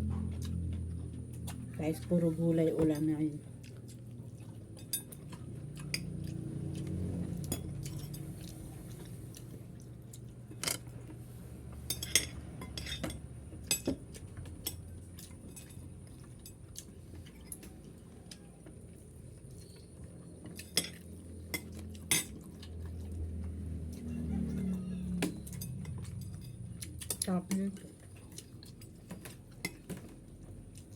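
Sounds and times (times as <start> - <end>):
cutlery clinking on plates: 11.9 - 14.0.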